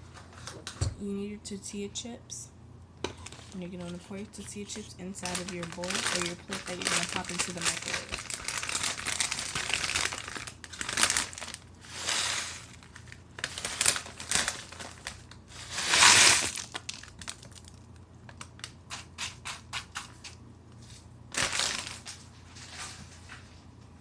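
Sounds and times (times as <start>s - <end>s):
chip bag crinkling: 3.2s - 20.3s, 20.9s - 22.9s.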